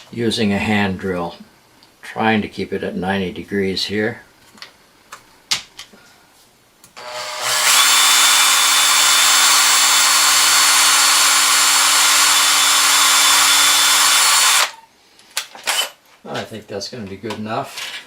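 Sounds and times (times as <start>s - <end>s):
electric drill drilling: 7.0s - 14.8s, 15.6s - 16.0s.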